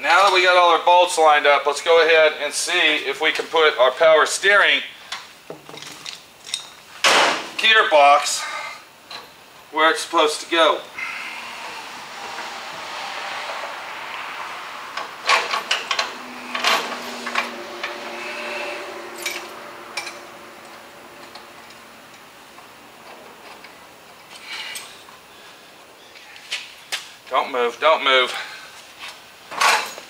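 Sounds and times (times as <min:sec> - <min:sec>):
metal clanks and knocks: 0:14.2 - 0:21.8.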